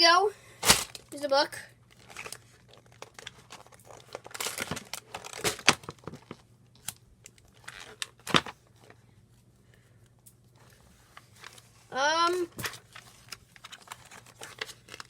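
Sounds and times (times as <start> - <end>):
paper and packaging rustling: 1.8 - 9.0, 10.6 - 15.0.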